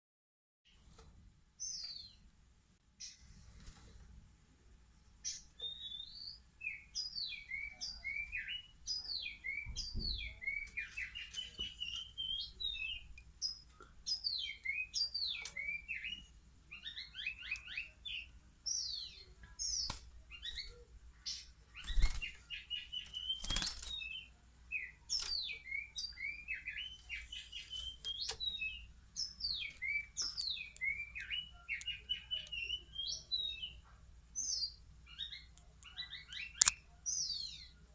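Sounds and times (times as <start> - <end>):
fledgling birds chirping: 0.7 - 37.9.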